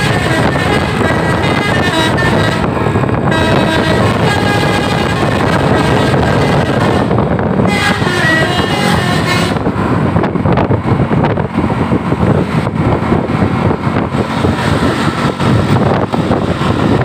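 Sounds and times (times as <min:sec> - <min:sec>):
musical air horn: 0:00.0 - 0:09.7
bus noise: 0:00.0 - 0:17.0.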